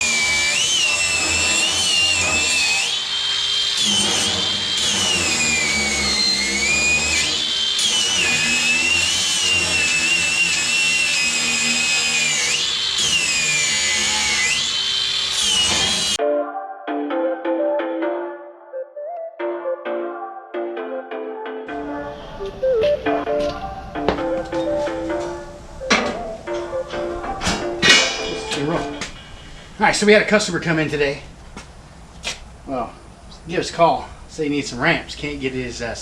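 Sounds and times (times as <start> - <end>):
angle grinder whining on steel: 0.0 - 16.2, 25.9 - 29.9.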